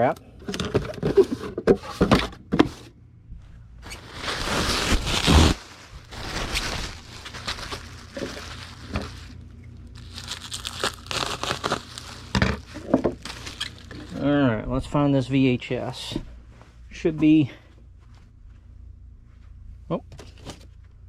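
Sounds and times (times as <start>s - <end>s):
bubble wrap crinkling: 3.8s - 14.3s.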